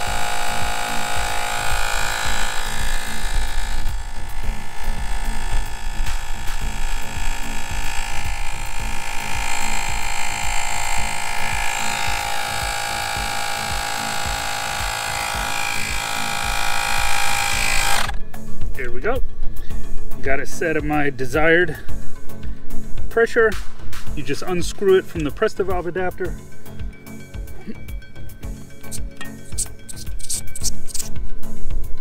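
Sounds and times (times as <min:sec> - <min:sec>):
mini air compressor whining: 0:00.0 - 0:18.2, 0:27.4 - 0:31.1.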